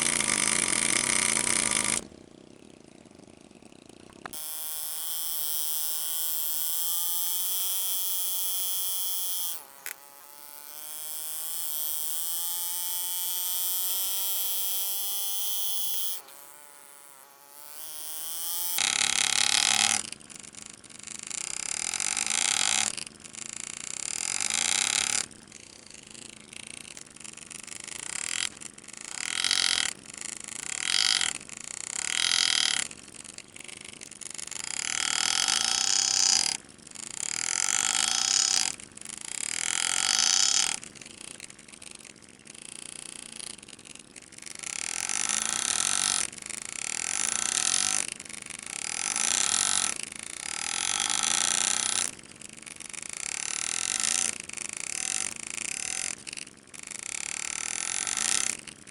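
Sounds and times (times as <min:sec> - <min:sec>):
pneumatic engraver cutting steel: 0:00.0 - 0:02.2, 0:04.0 - 0:20.2, 0:21.3 - 0:32.9, 0:33.7 - 0:36.6, 0:37.2 - 0:40.8, 0:44.6 - 0:52.2, 0:53.2 - 0:56.4.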